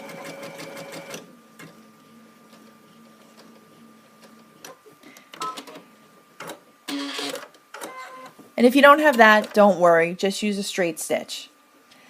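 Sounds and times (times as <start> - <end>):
sewing machine mechanical whirs: 0.0 - 1.8, 2.5 - 8.3.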